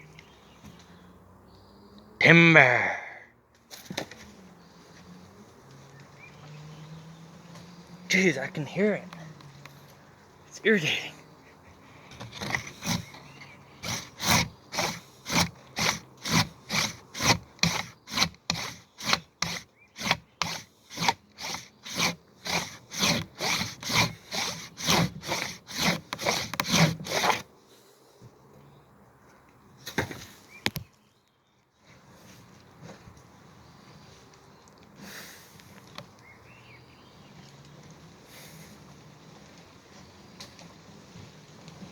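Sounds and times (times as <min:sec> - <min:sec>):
handsaw cutting wood: 0:12.1 - 0:27.5.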